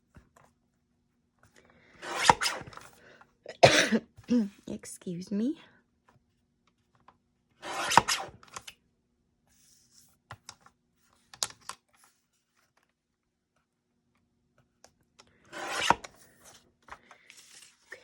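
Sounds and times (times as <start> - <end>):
paper swipe rasping: 2.0 - 2.8, 15.6 - 16.0.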